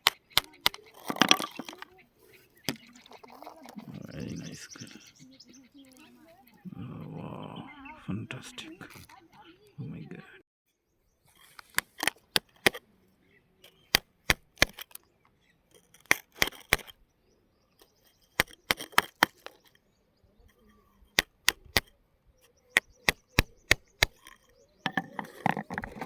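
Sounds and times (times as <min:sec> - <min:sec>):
hard objects knocking together: 0:00.0 - 0:01.9, 0:18.3 - 0:19.7, 0:22.8 - 0:26.0.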